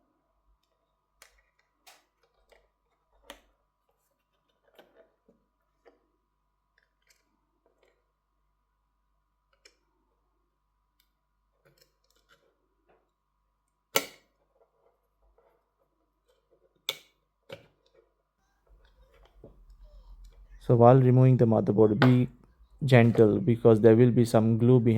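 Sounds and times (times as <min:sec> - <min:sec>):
faint steady hum: 0:18.4 - 0:24.9.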